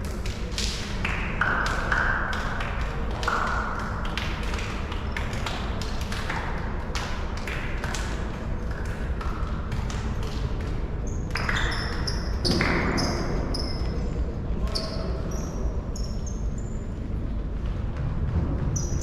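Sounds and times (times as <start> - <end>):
sports shoes squeaking: 11.1 - 13.9.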